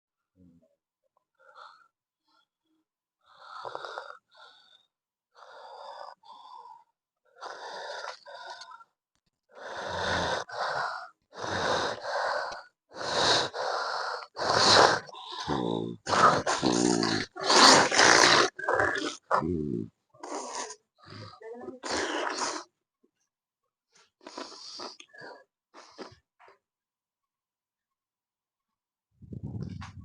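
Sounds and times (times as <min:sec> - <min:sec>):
heavy rasping breathing: 0:09.5 - 0:18.2.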